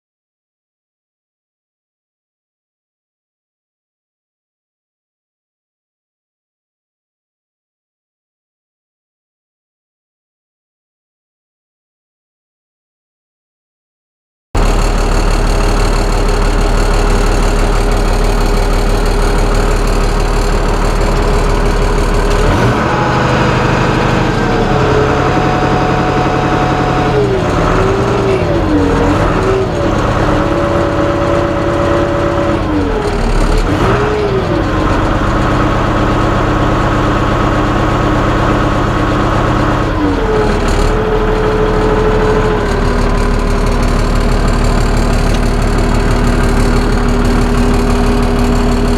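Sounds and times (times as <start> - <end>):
tractor diesel engine revving: 14.6 - 48.9.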